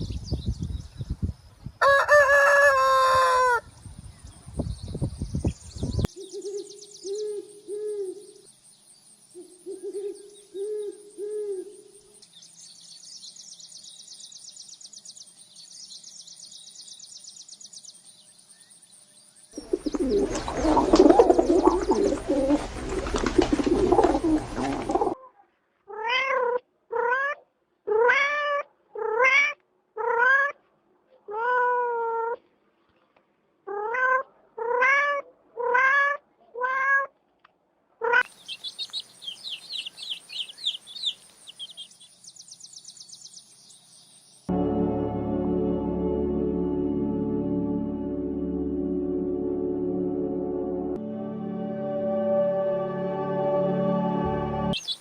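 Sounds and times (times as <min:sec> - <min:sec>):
cat meowing: 0:25.9 - 0:30.6, 0:31.3 - 0:32.4, 0:33.7 - 0:37.1.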